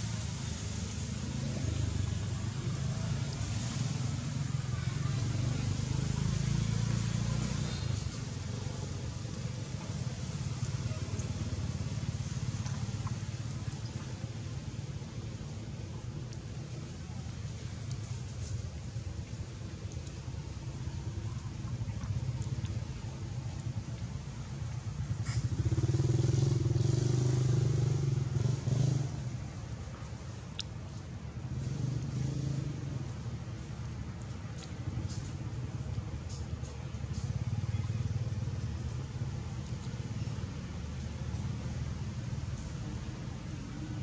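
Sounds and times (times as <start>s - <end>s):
vehicle engine rumbling: 0.0s - 44.0s
motorcycle engine passing: 25.2s - 29.4s.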